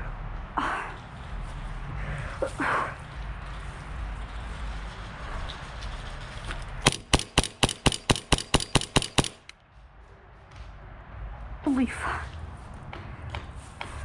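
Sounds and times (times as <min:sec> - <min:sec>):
low rumbling noise: 0:00.0 - 0:14.0
airsoft gun shots: 0:06.8 - 0:09.5.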